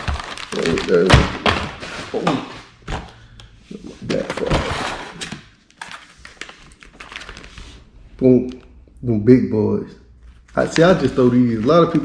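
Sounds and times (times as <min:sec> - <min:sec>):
packaging rustling and crinkling: 0:00.0 - 0:02.4, 0:04.1 - 0:07.8.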